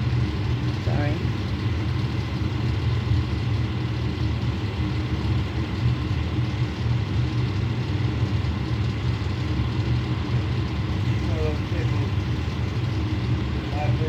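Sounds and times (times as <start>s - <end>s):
fire truck engine idling: 10.7s - 14.0s.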